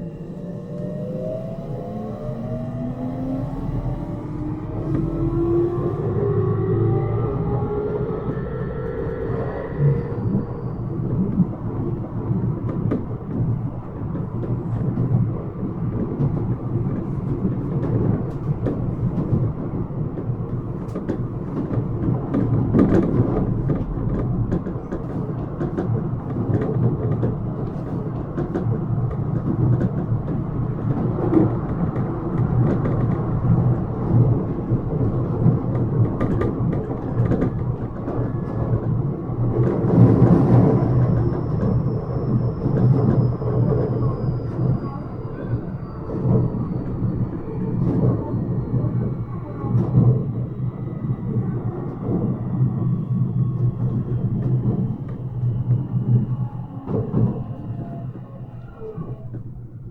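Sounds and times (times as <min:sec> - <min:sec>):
faint high whine: 0:00.0 - 0:11.8
train wheels rumbling on rail: 0:00.0 - 0:59.9.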